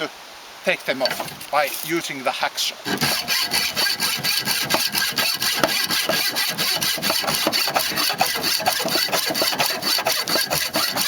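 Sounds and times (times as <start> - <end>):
hacksaw sawing through steel: 2.9 - 11.0.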